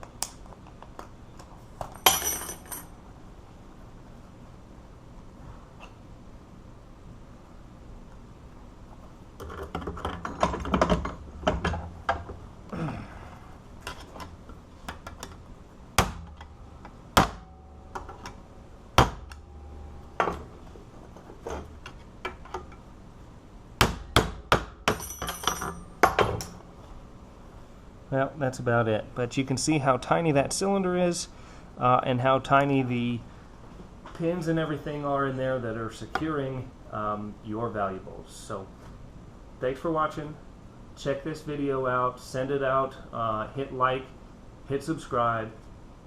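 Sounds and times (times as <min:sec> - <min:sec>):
metallic ring: 0:01.9 - 0:02.9, 0:24.9 - 0:26.0.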